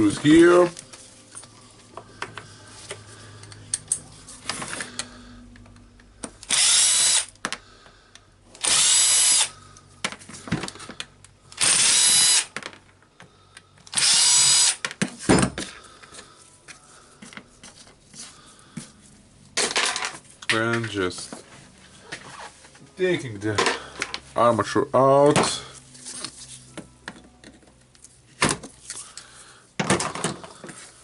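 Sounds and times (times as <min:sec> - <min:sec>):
power screwdriver whirring: 0:06.4 - 0:07.4, 0:08.6 - 0:09.5, 0:11.5 - 0:12.5, 0:13.9 - 0:14.8.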